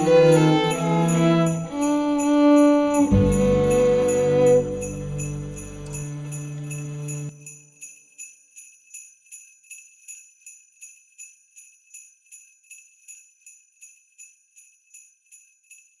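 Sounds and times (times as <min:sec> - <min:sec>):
sleigh bells shaken: 0:00.0 - 0:07.4
music: 0:00.0 - 0:07.5.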